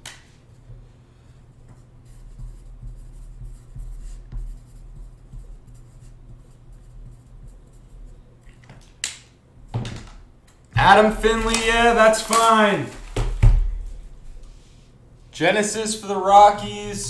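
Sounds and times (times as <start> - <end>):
pen scratching on paper: 1.7 - 8.3.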